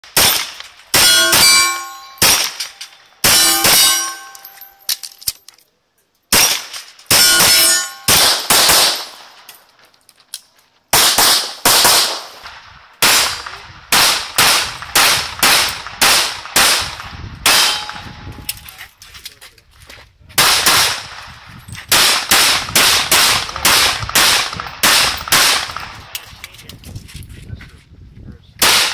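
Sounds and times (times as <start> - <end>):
pistol shots: 0.0 - 4.9, 6.3 - 9.5, 10.9 - 18.1, 20.4 - 21.3, 21.9 - 26.1, 28.6 - 28.9
steel plates clanging: 0.9 - 5.5, 7.1 - 8.2, 17.5 - 18.7.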